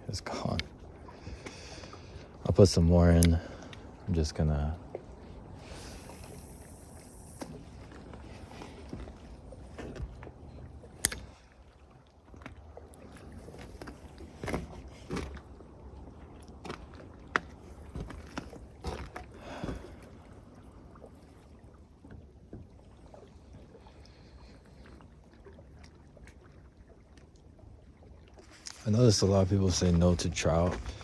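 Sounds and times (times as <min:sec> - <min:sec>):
water lapping at shore: 0:00.0 - 0:31.0
fishing tackle clicks and rustles: 0:00.1 - 0:03.9, 0:05.6 - 0:11.6, 0:12.2 - 0:15.7, 0:16.4 - 0:20.0, 0:28.4 - 0:31.0.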